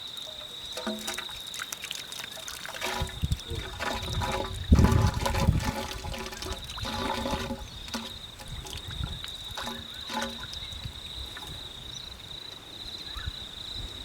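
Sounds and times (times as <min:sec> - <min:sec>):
ash poured down a tube: 0:00.8 - 0:10.8.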